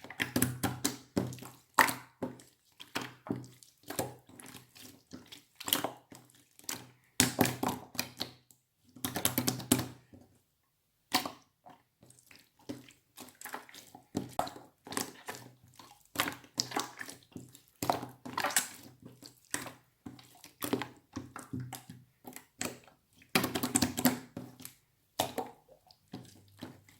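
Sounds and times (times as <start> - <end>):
slime squishing in hands: 12.1 - 26.9.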